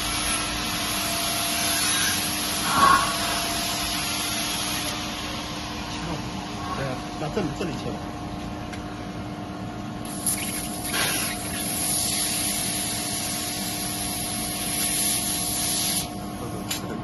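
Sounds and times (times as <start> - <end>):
steady hum: 0.0 - 10.0
laser cutting head hissing: 1.6 - 4.8.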